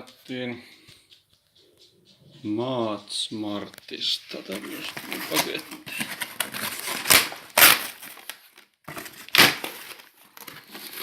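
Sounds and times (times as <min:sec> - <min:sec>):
cardboard rustling and scraping: 0:04.3 - 0:08.3, 0:08.9 - 0:11.0.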